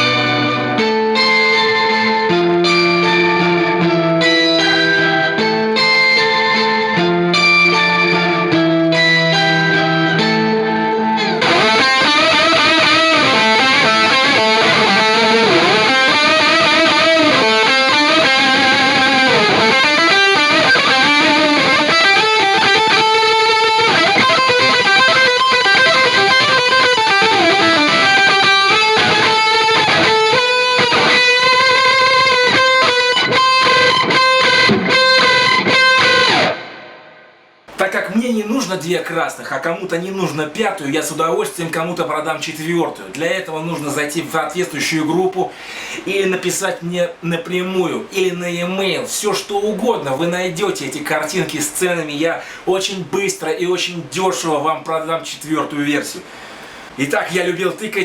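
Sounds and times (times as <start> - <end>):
warbling pitch-shifted electric guitar: 0.0 - 37.3.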